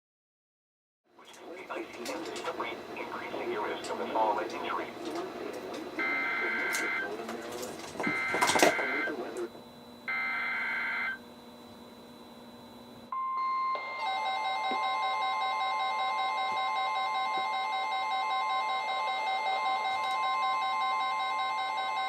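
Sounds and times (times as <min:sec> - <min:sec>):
steady warning alarm tone: 0:02.0 - 0:22.0
radio alarm beeps: 0:06.0 - 0:07.2, 0:08.0 - 0:09.4, 0:10.1 - 0:11.2, 0:13.1 - 0:22.0.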